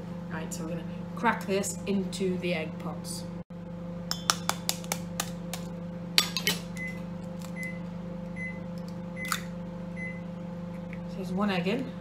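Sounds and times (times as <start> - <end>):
microwave oven humming: 0.0 - 12.0
egg cracking taps and clicks: 4.1 - 5.7.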